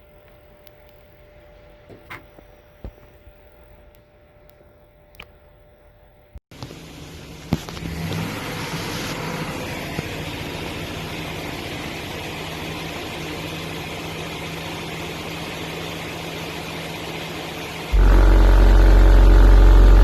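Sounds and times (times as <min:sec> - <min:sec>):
click: 0:00.3 - 0:01.0
vehicle engine idling: 0:06.6 - 0:20.0.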